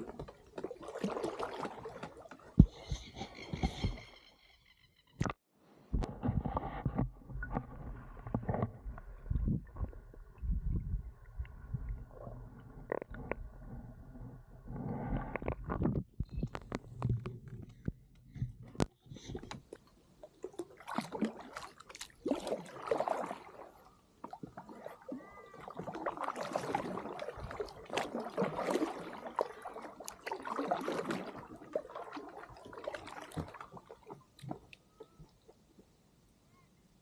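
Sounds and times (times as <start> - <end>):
paddle splashing in water: 0.0 - 4.0, 19.2 - 35.6.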